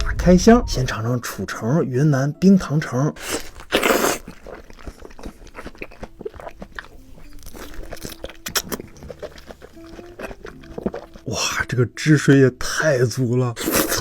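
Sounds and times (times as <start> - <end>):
wet chewing: 3.1 - 14.0
loud bite into orange: 3.2 - 11.2, 13.6 - 14.0.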